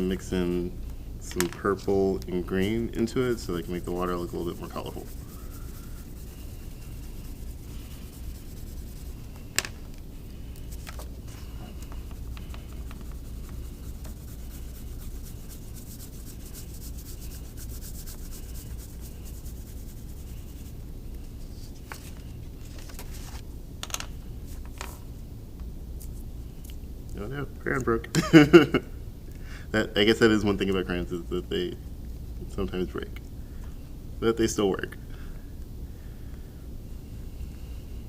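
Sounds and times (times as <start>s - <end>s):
crayon scribbling on paper: 2.5s - 9.4s, 10.6s - 20.8s.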